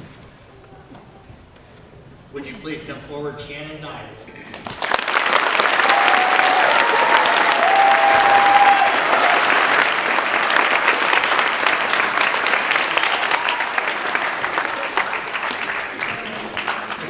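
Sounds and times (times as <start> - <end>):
audience applauding: 4.5 - 17.0.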